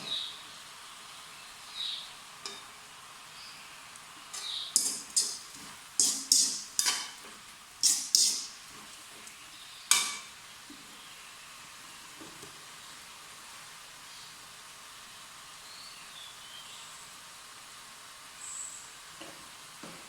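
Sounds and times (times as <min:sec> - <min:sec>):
spatula scraping a frying pan: 0:04.3 - 0:09.0.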